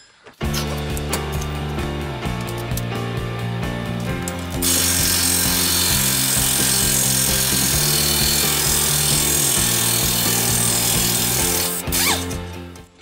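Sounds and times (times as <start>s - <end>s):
background music: 0.4s - 13.0s
power tool running: 4.3s - 12.5s.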